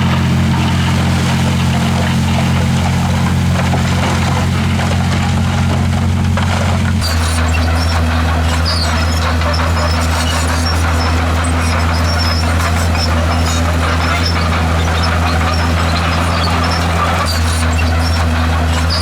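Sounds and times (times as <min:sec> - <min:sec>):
bulldozer diesel engine running: 0:00.0 - 0:19.0
high-pitched squeals and clicks: 0:07.0 - 0:19.0.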